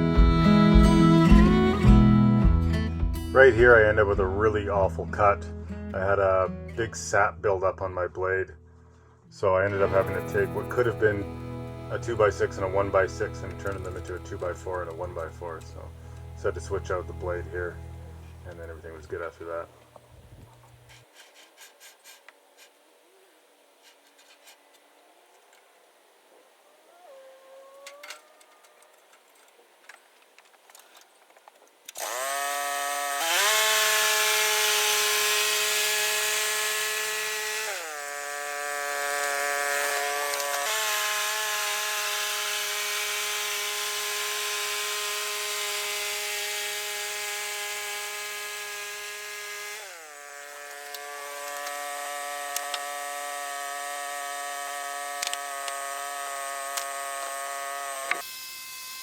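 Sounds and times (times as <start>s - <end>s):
sawmill engine whining: 0.0s - 2.4s, 9.6s - 20.7s, 32.0s - 59.0s
band blade cutting log: 9.8s - 19.0s, 32.0s - 58.4s.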